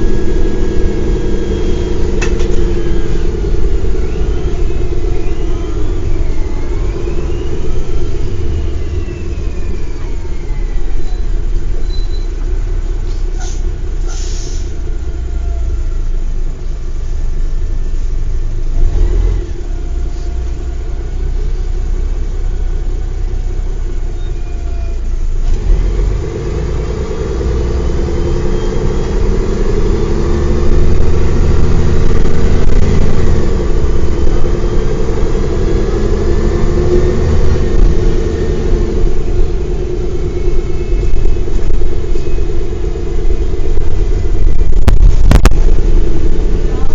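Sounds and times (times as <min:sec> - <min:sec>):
gearbox whine: 0:00.0 - 0:12.5
bus engine running: 0:00.0 - 0:46.9.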